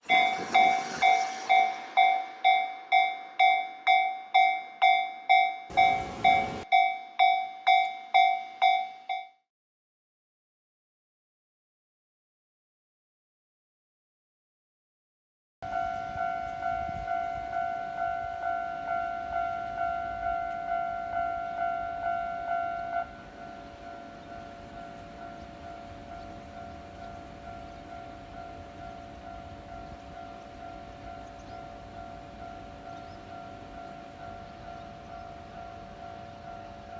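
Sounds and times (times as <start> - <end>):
rush of noise: 0.0 - 3.0
level crossing alarm ringing: 0.0 - 9.3, 15.6 - 26.8.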